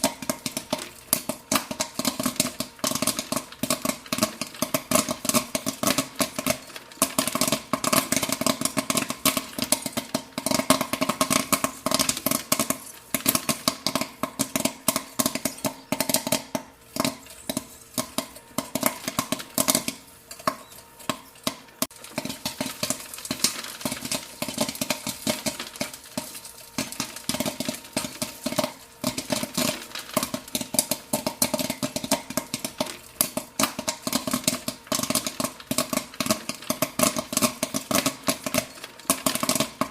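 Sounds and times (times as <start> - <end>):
popcorn popping: 0.0 - 39.9.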